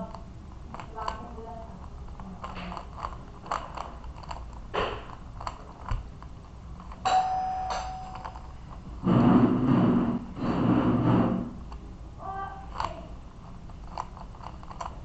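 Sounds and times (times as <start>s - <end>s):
plastic cube layers clicking: 0.0s - 7.0s, 12.7s - 13.0s, 13.7s - 15.0s
ringing tone: 7.1s - 8.5s.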